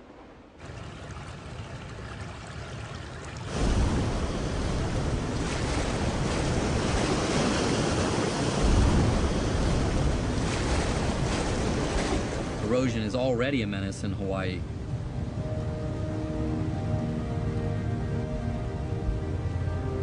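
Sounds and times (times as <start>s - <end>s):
ocean surf rushing: 3.5s - 16.8s.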